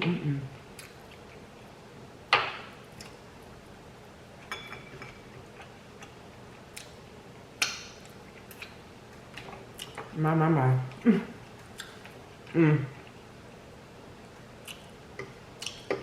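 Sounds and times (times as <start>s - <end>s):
clinks of dishes while eating: 4.4s - 5.2s.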